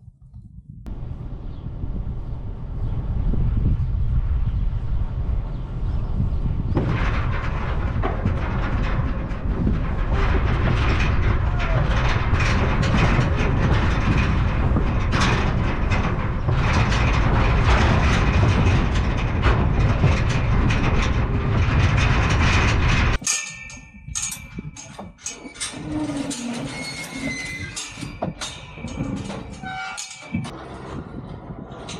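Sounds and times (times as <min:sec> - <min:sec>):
loud steady rumble: 0:00.9 - 0:23.2
metal trailer rattling and clanking: 0:00.9 - 0:31.9.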